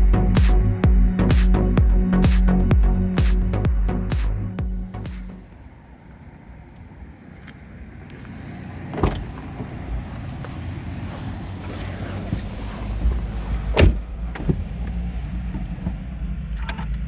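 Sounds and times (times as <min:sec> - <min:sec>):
low rumble: 0:00.0 - 0:05.6.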